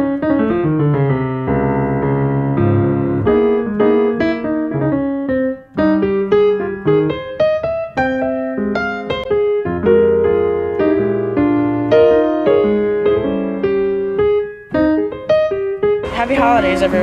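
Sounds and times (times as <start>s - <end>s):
piano melody: 0.0s - 17.0s.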